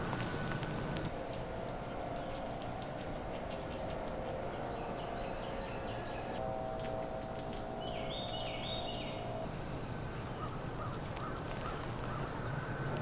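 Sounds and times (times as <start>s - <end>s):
birds calling: 9.5s - 13.0s.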